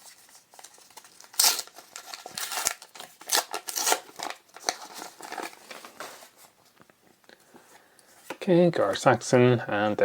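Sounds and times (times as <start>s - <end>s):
foil wrapper crinkling: 0.0s - 6.4s.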